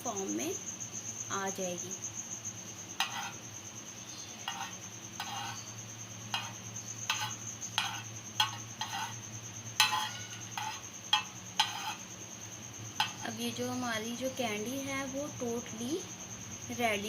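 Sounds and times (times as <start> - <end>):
metal spoon scraping frying pan: 3.0 - 3.4, 4.4 - 5.7, 6.3 - 9.2, 9.8 - 12.0.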